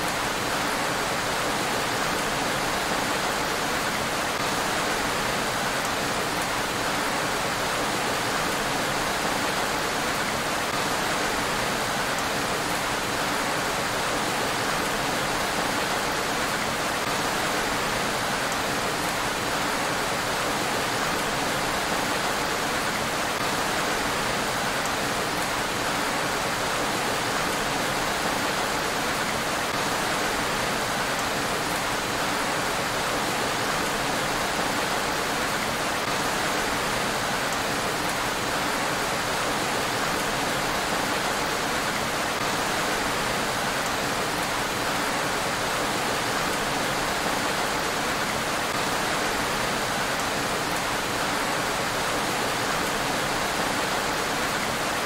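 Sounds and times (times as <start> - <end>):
heavy rain on a road: 0.0 - 55.0.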